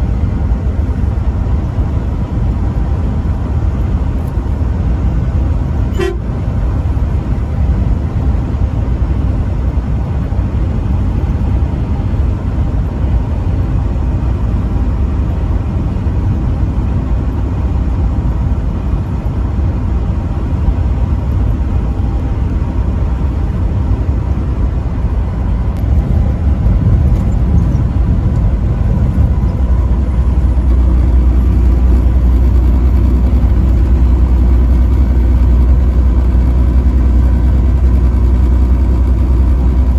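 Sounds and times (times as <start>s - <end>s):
vehicle driving on highway: 0.0s - 39.9s.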